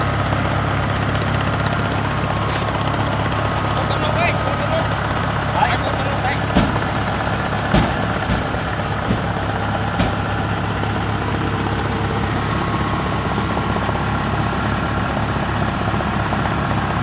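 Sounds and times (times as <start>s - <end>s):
diesel engine running: 0.0s - 17.0s
short knocks: 6.4s - 10.4s.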